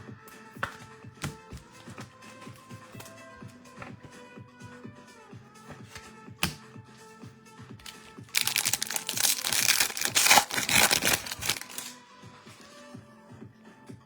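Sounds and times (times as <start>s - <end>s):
background music with steady beat: 0.0s - 14.0s
wrapper tearing and crinkling: 7.8s - 12.0s.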